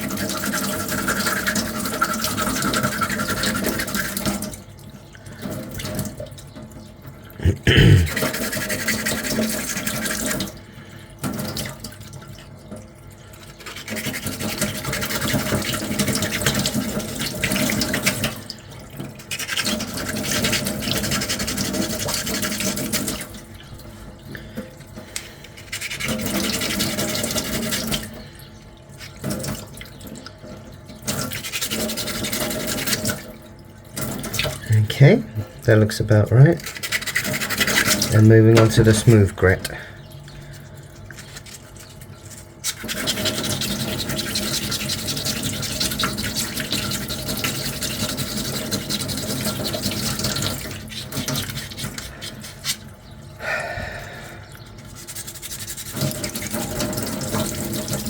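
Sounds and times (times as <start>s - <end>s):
sandpaper rubbing: 36.6s - 38.1s, 41.2s - 52.8s, 54.8s - 56.8s.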